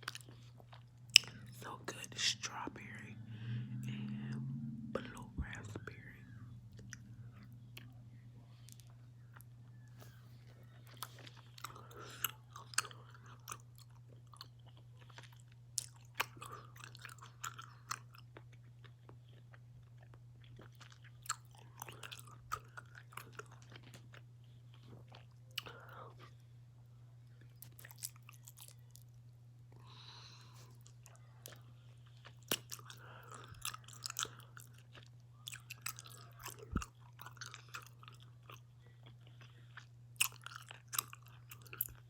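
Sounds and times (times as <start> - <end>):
wet chewing: 0.0 - 1.6, 8.6 - 26.3, 29.9 - 42.0
low hum: 0.0 - 13.4
breathing: 3.2 - 3.8, 29.8 - 30.8, 31.7 - 33.6, 39.2 - 39.9.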